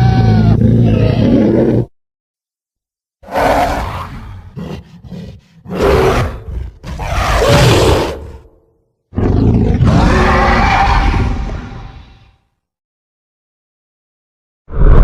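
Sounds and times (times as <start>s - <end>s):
creature roaring: 0.0s - 1.9s, 3.2s - 8.5s, 9.2s - 12.2s, 14.7s - 15.0s.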